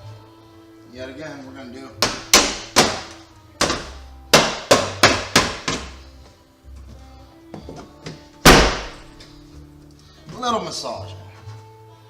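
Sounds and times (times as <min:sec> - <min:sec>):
hammer striking sheet steel: 0:02.0 - 0:06.0.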